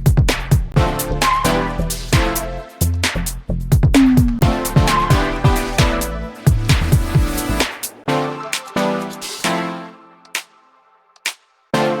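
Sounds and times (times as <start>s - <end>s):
electronic synth chords: 0.8s - 2.9s, 4.0s - 10.1s
percussive hits: 3.8s - 8.0s.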